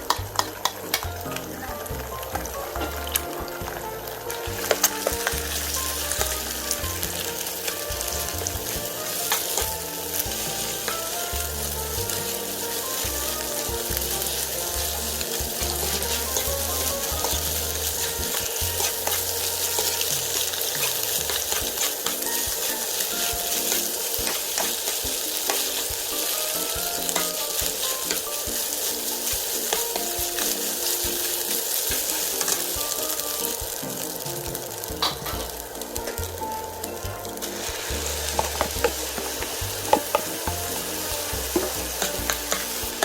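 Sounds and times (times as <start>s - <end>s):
food sizzling in a pan: 0.0s - 43.0s
light background music: 0.0s - 43.0s
spatula scraping and tapping pan: 0.0s - 43.0s.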